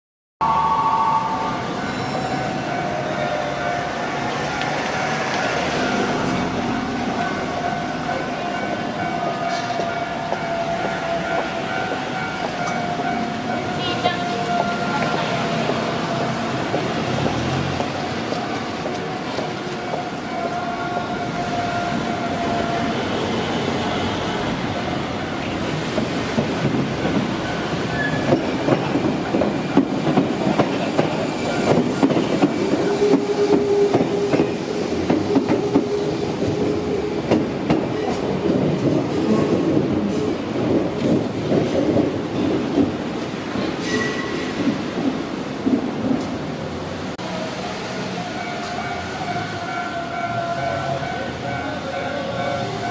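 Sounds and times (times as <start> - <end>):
electric train rumble and whine: 0.4 - 52.9.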